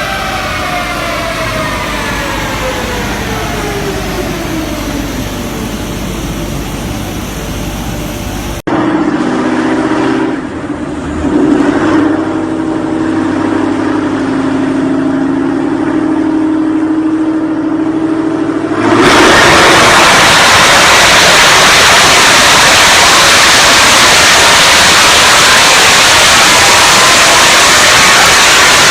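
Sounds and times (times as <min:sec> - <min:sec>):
car engine revving: 0:00.0 - 0:08.7
loud even rushing noise: 0:00.0 - 0:08.7.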